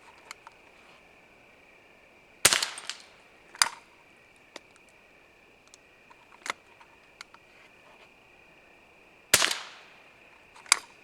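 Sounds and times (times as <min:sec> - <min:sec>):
gunshot cracks with echo: 0:02.5 - 0:03.2, 0:09.4 - 0:10.0.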